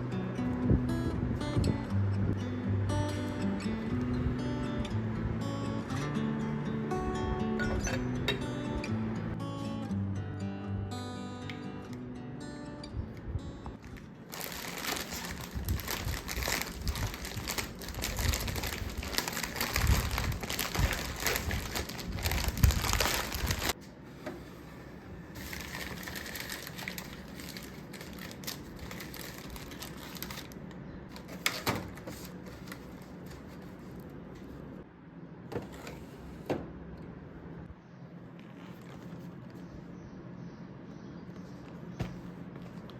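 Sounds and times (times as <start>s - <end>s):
packaging crinkling and rustling: 13.8s - 23.8s, 25.4s - 34.6s.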